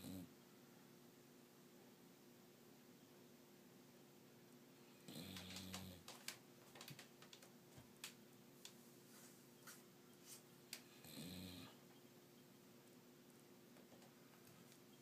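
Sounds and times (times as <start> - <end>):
dog snoring: 0.0 - 0.3, 5.0 - 6.1, 10.9 - 11.8
faint ticks: 5.2 - 6.3.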